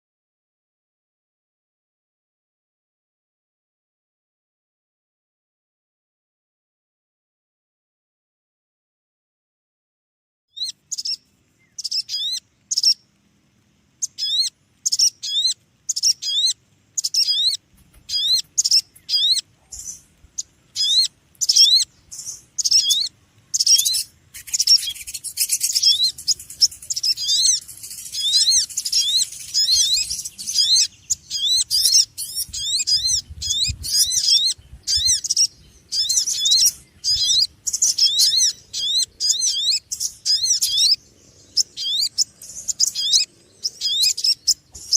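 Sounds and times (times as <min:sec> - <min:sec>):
small birds chirping: 0:10.5 - 0:44.9.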